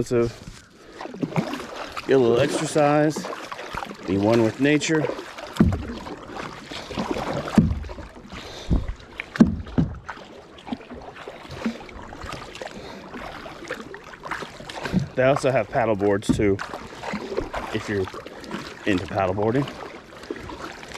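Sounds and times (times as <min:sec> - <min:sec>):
kayak paddle splashing: 0:00.0 - 0:20.9
water wash: 0:01.0 - 0:20.9
low knocks: 0:05.6 - 0:06.1, 0:07.5 - 0:08.0, 0:08.7 - 0:10.1.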